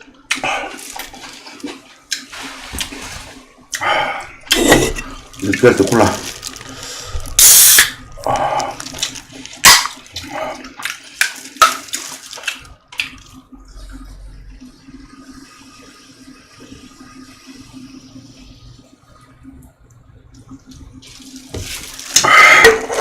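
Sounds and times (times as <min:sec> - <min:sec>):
low steady hum: 0:00.0 - 0:23.0
wet slurps and clicks: 0:07.8 - 0:13.4.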